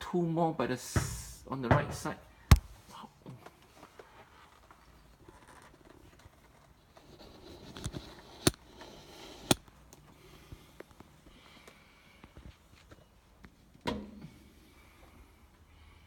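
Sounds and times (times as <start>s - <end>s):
sharp knocks: 1.0s - 2.8s.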